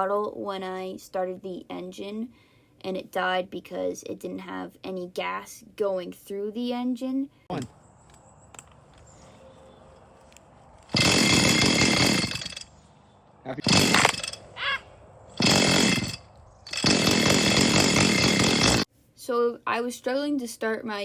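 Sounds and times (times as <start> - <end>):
chainsaw pull-starting: 10.8 - 12.7, 13.6 - 14.4, 15.4 - 18.9.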